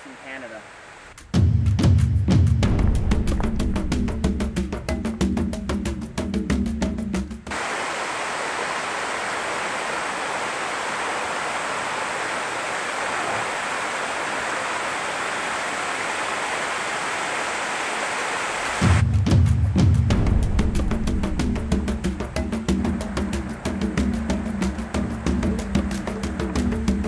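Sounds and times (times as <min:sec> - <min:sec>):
small waterfall rushing: 0:00.0 - 0:01.2, 0:07.5 - 0:19.0, 0:20.1 - 0:27.0
rhythmic percussion music: 0:01.2 - 0:07.5, 0:18.9 - 0:27.0.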